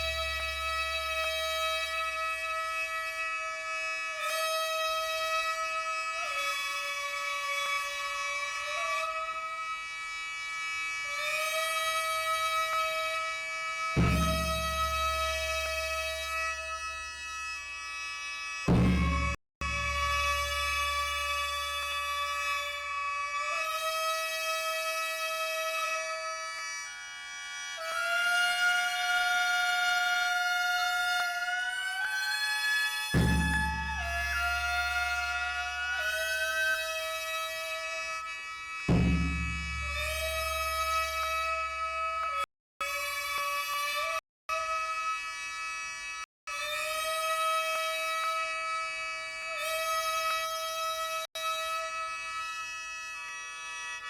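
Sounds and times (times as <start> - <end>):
reedy wind instrument notes: 0.0 - 3.1, 13.8 - 17.2, 18.7 - 22.4, 33.2 - 42.4.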